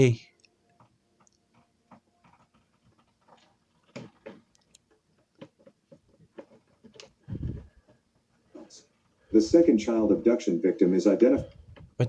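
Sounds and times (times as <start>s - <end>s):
faint clicks and taps: 0.3s - 9.2s.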